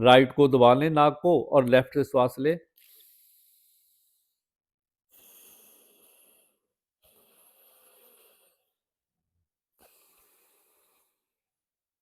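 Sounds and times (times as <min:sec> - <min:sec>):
faint breaths through nostril: 0:02.7 - 0:08.8, 0:09.8 - 0:11.4.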